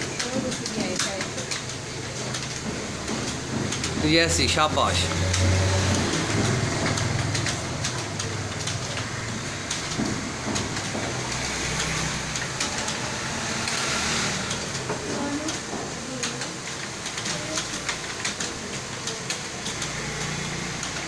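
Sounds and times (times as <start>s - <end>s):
computer keyboard typing: 0.0s - 21.0s.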